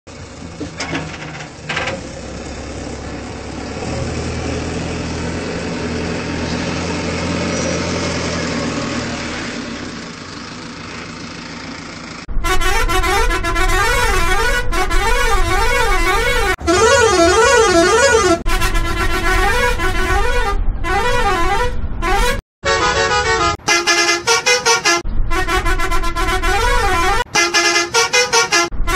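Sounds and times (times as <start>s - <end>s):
bus engine droning: 0.1s - 28.9s
musical air horn: 12.4s - 28.9s.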